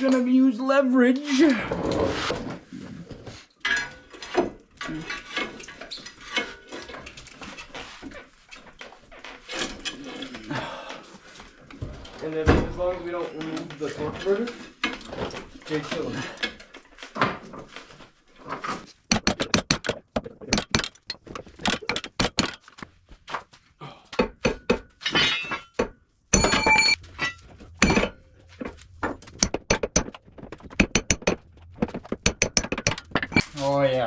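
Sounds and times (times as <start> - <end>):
metal-on-metal knocks: 24.2 - 33.5.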